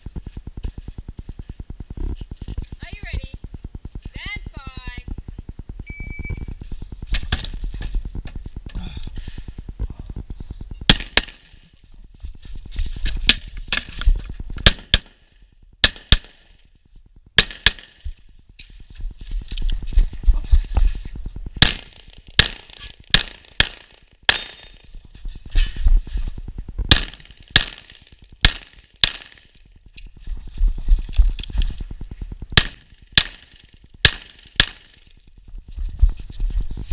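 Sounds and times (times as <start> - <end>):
steady low rumble: 0.0 - 36.9
rapid pistol fire: 15.8 - 16.5, 17.4 - 18.0, 21.6 - 24.6, 26.9 - 29.5, 32.6 - 35.0.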